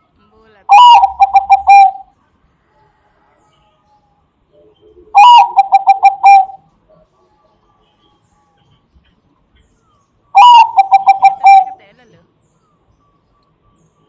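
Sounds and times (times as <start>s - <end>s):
dove cooing loudly: 0.7s - 2.1s, 5.1s - 6.6s, 10.4s - 11.8s.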